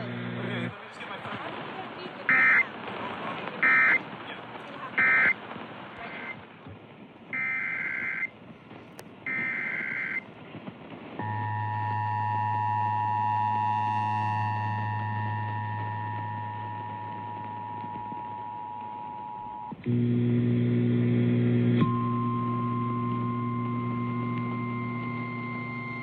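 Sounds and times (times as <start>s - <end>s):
two-tone attention signal: 2.3s - 2.6s, 3.6s - 4.0s, 5.0s - 5.4s, 11.2s - 19.7s.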